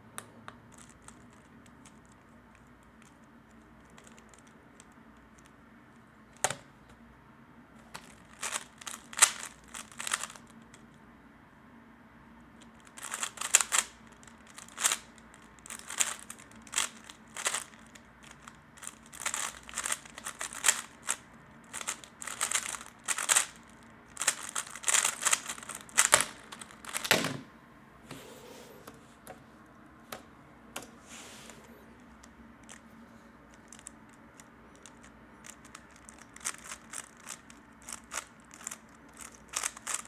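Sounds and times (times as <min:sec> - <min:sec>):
speed cube clicking: 0:00.2 - 0:05.5, 0:08.0 - 0:10.8, 0:12.6 - 0:27.2, 0:32.0 - 0:32.8, 0:33.5 - 0:40.0
faint handling sounds: 0:12.6 - 0:40.0.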